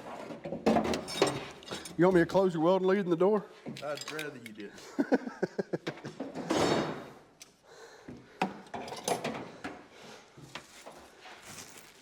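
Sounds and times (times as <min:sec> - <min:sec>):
rustling and scraping: 0:10.0 - 0:12.0.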